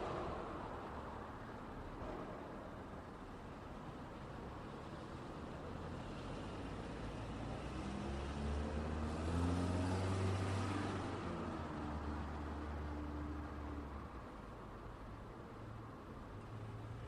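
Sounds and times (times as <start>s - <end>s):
background traffic: 0.0s - 17.0s
vehicle driving past: 7.1s - 13.7s.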